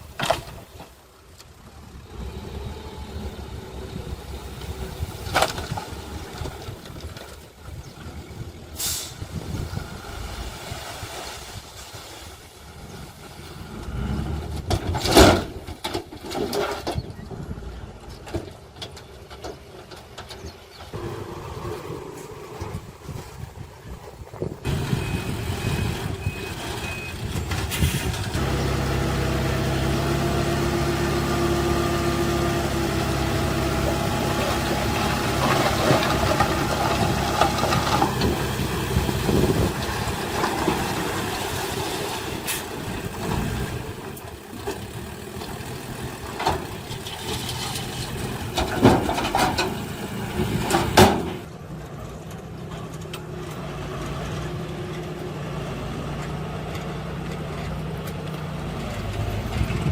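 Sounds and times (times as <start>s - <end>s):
diesel engine running: 0.0s - 10.8s, 16.9s - 59.9s
reversing alarm beeping: 24.7s - 27.3s.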